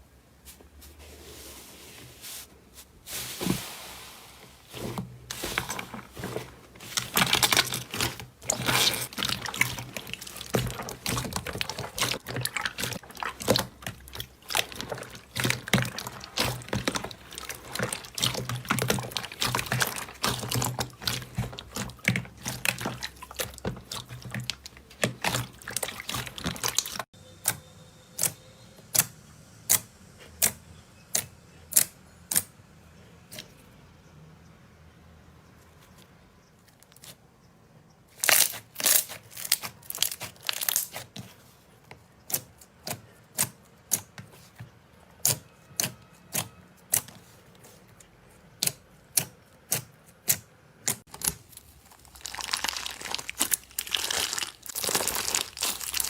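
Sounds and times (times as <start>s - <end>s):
slime crackling and popping: 5.5s - 27.1s, 38.2s - 41.0s, 50.9s - 56.0s.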